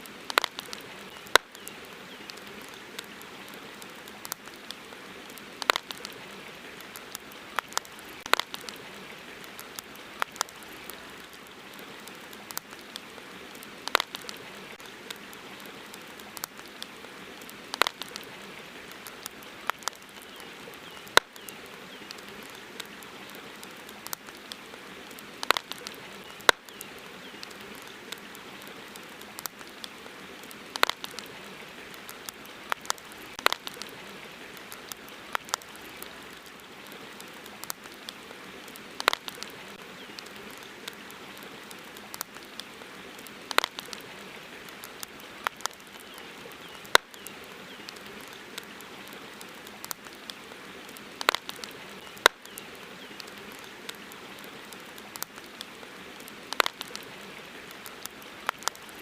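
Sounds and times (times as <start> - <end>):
campfire crackling: 0.0 - 59.0
fire pops and snaps: 0.0 - 59.0.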